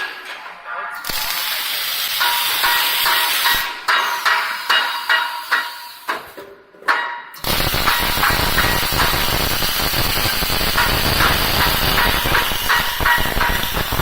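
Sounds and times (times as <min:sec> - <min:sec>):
welding machine hissing crackle: 0:01.0 - 0:06.1, 0:07.4 - 0:14.0
rhythmic machine clatter: 0:01.9 - 0:05.8, 0:07.4 - 0:14.0.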